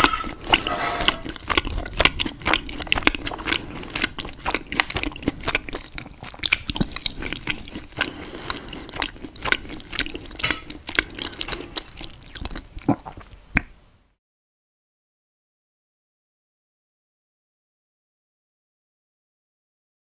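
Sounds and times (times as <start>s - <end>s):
wet chewing and smacking: 0.2s - 13.7s.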